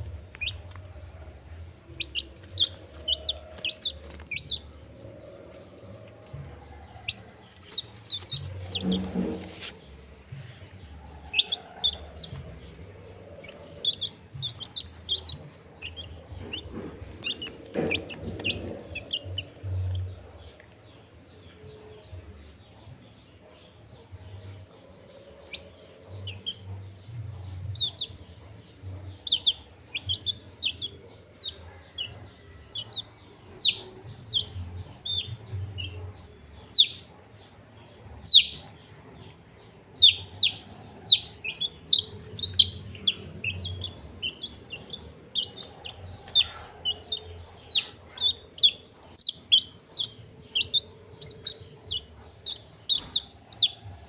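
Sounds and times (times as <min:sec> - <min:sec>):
low rustling and bumps: 0:00.0 - 0:21.0
chicks peeping: 0:00.0 - 0:54.0.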